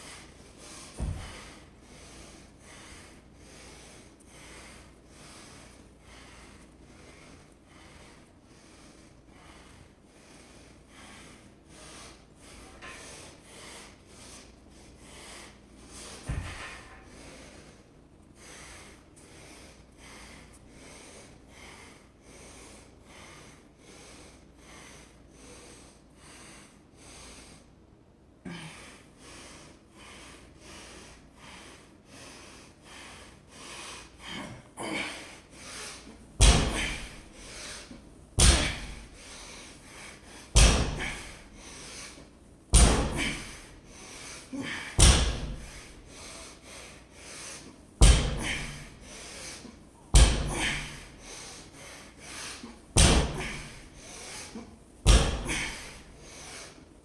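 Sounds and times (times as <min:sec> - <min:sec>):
barbell thudding on floor: 0:01.0 - 0:01.5, 0:16.3 - 0:17.0, 0:36.4 - 0:37.5, 0:38.4 - 0:39.2, 0:40.6 - 0:41.4, 0:42.8 - 0:43.7, 0:45.0 - 0:45.9, 0:48.0 - 0:49.0, 0:50.1 - 0:51.2, 0:53.0 - 0:54.0, 0:55.0 - 0:56.1.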